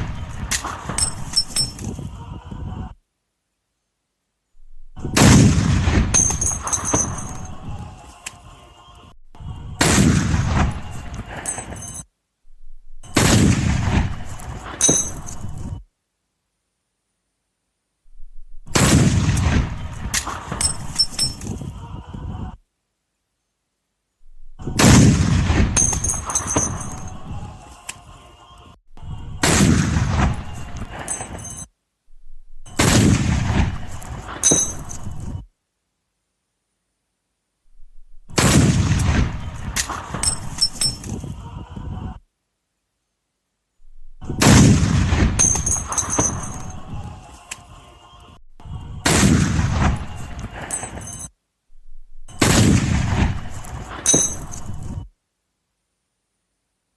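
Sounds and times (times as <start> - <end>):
brass casing clinking: 0.5 - 2.0, 6.1 - 7.7, 11.4 - 12.1, 14.3 - 15.8, 20.2 - 21.5, 25.8 - 27.2, 30.5 - 31.7, 33.9 - 35.3, 39.6 - 41.2, 45.4 - 47.6, 50.1 - 52.6, 53.4 - 54.9
rifle shots echoing: 5.1 - 7.6, 9.8 - 11.9, 13.0 - 15.7, 18.7 - 21.4, 24.8 - 27.2, 29.4 - 31.6, 32.7 - 35.3, 38.3 - 40.7, 44.4 - 46.9, 49.0 - 51.2, 52.3 - 54.9.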